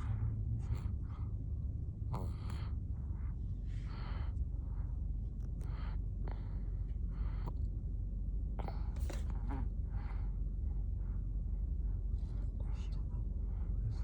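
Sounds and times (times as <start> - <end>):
steady low rumble: 0.0 - 14.0.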